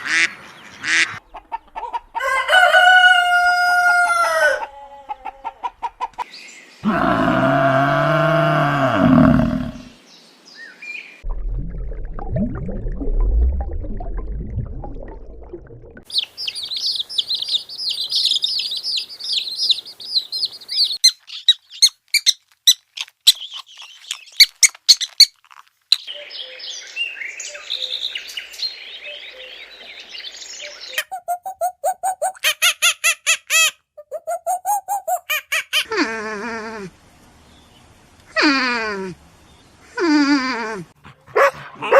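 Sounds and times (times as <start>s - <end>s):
low rumbling growl: 6.8s - 10.0s
birds chirping and squeaking: 16.1s - 26.6s.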